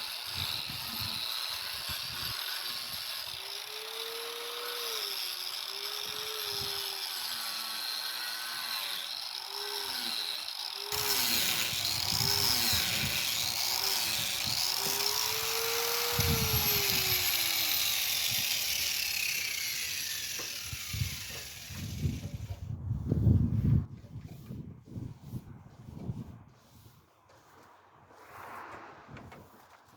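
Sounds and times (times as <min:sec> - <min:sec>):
angle grinder cutting mortar: 0:00.0 - 0:22.6.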